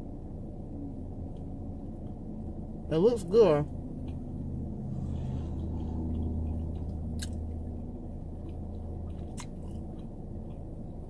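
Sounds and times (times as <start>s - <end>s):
low hum: 0.0s - 11.0s
person chewing food: 4.0s - 11.0s.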